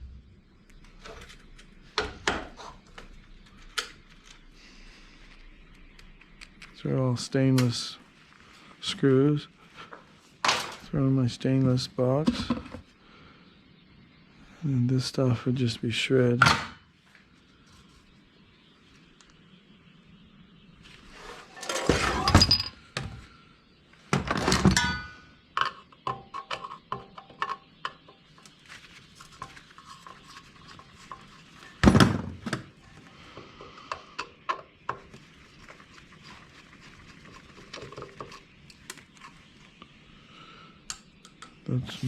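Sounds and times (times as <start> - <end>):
metal parts clanking: 21.4 - 22.8.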